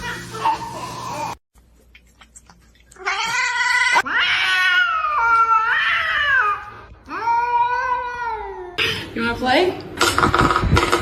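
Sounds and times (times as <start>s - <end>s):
cat yowling: 3.0s - 8.8s.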